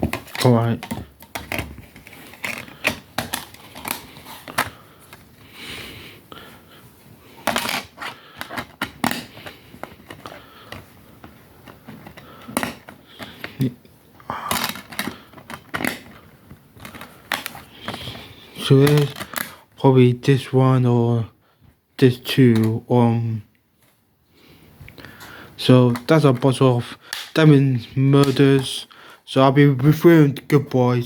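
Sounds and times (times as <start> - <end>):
plastic case clicks and rattles: 0.0 - 5.2, 7.4 - 13.7, 14.5 - 16.2, 16.8 - 18.2, 18.8 - 19.6.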